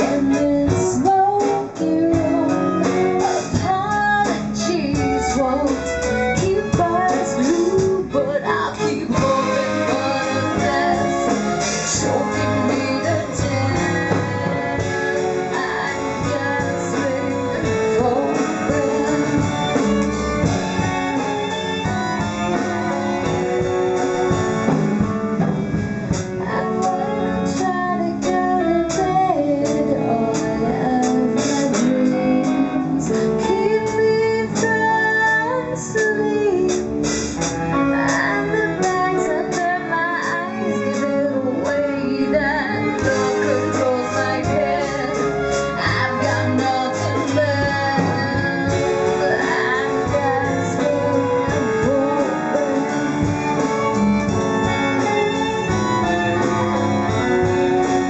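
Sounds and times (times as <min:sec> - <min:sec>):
person singing: 0:00.0 - 0:20.8, 0:26.4 - 0:36.9, 0:37.8 - 0:53.8
guitar: 0:00.0 - 0:58.0.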